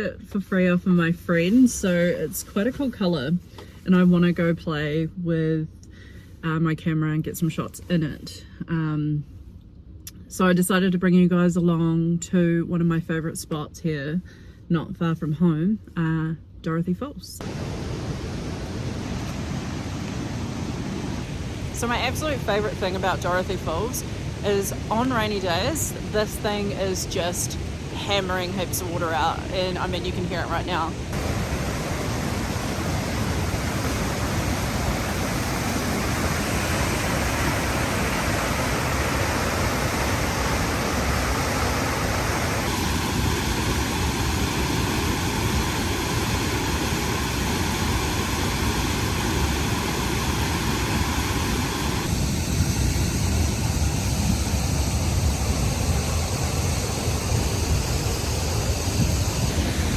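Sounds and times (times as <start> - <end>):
waterfall rushing: 17.4 - 27.0, 27.8 - 59.9.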